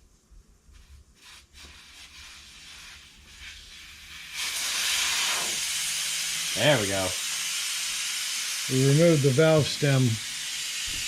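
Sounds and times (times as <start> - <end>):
air hissing out of tire valve: 0.7 - 11.0.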